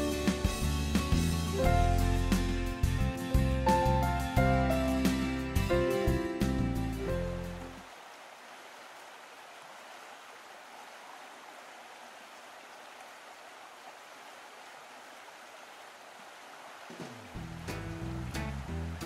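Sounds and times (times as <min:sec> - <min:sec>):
stream water running: 0:02.8 - 0:19.0.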